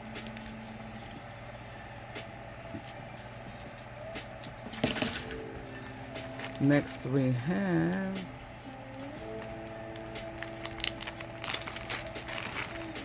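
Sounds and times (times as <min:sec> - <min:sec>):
necklace clicking and clinking: 0:00.0 - 0:01.4
steady low hum: 0:00.0 - 0:13.0.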